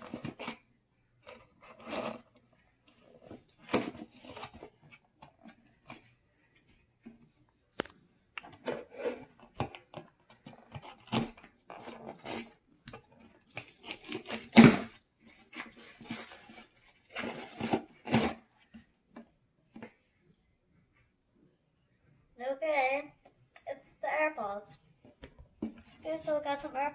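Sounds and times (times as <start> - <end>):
box packaging rustling and scraping: 0.0 - 7.2, 8.4 - 18.9, 24.4 - 26.9.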